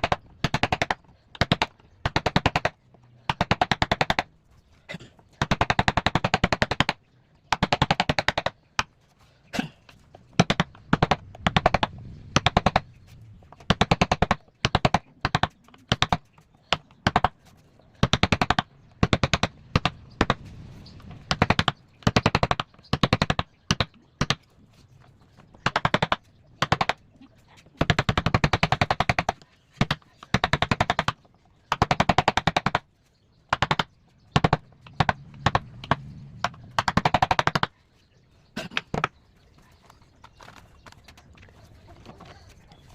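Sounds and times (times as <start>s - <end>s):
carving tool tapping on wood: 0.0s - 4.3s, 5.4s - 8.9s, 13.6s - 17.4s, 27.8s - 32.8s, 33.5s - 37.7s.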